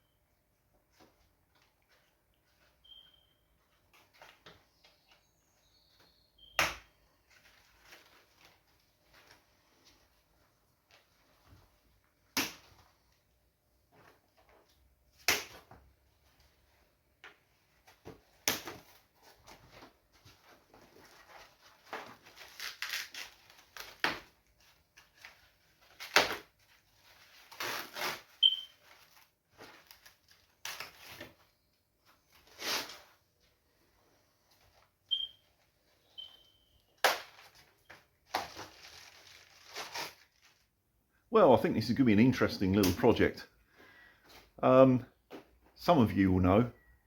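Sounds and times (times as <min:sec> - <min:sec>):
brief squeak: 0:02.8 - 0:03.4, 0:28.4 - 0:28.7, 0:36.1 - 0:36.8
rustling: 0:17.6 - 0:40.8.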